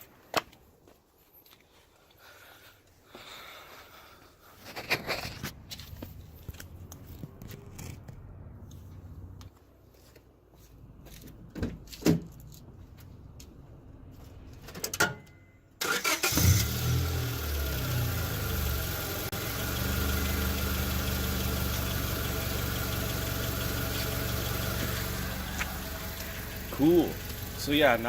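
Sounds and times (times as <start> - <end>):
car engine starting and idling: 5.1 - 9.5, 15.8 - 28.0.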